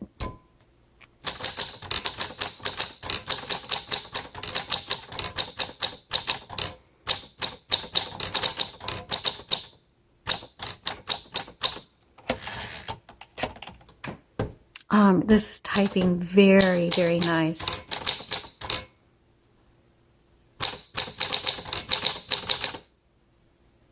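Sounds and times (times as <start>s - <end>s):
manual typewriter typing: 1.2s - 14.0s, 15.7s - 18.9s, 20.6s - 22.9s.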